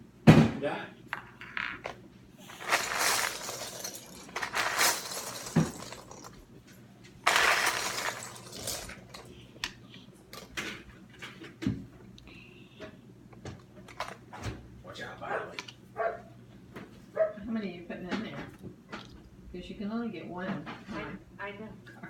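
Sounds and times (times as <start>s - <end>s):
toy bricks clattering: 1.2s - 6.4s, 7.2s - 9.4s.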